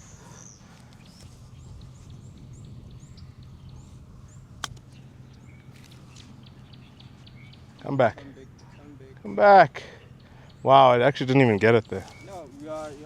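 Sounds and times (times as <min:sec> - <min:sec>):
bird chirping: 0:00.0 - 0:13.0
putter striking golf ball: 0:04.6 - 0:05.1.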